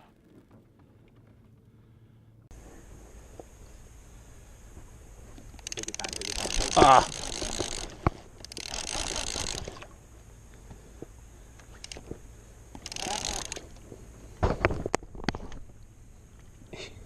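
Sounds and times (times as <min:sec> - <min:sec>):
fishing reel ratcheting: 0:05.4 - 0:10.0, 0:11.6 - 0:13.9.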